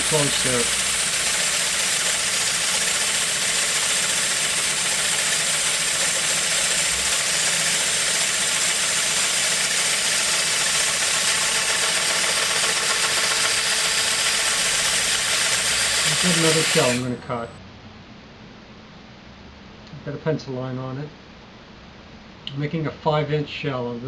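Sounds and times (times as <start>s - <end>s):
tool cutting wood hiss: 0.0s - 17.5s
wood lathe running: 0.0s - 17.6s.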